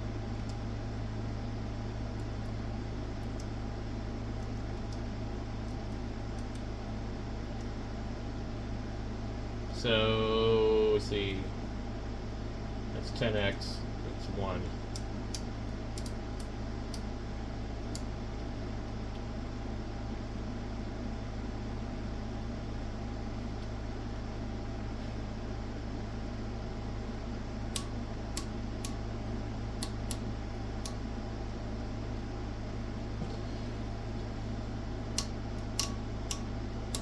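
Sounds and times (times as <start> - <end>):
mains hum and fan noise: 0.0 - 37.0
sharp clicks: 14.9 - 17.1, 35.2 - 37.0.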